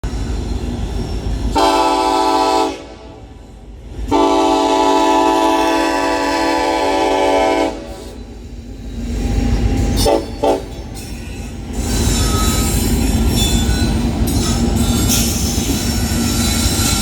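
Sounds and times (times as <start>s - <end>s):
train rumble: 0.0s - 17.0s
locomotive air horn: 1.6s - 3.2s, 4.1s - 8.0s.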